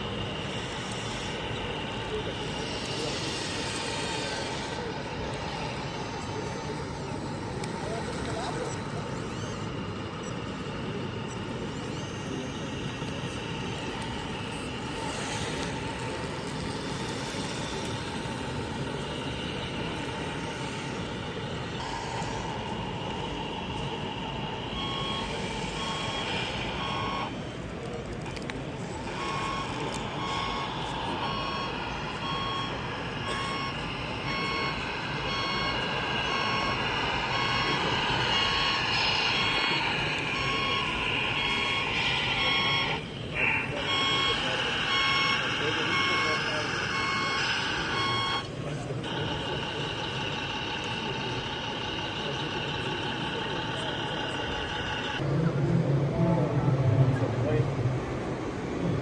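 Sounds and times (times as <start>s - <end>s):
reversing alarm beeping: 0.0s - 55.2s
steady mechanical hum: 0.0s - 59.0s.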